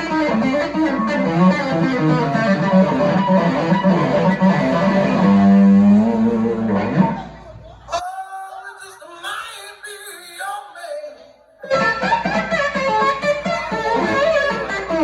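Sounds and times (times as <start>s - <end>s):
blues-rock band playing: 0.0s - 7.3s, 11.6s - 15.0s
bass: 0.0s - 7.4s
electric guitar: 0.0s - 7.7s, 11.6s - 15.0s.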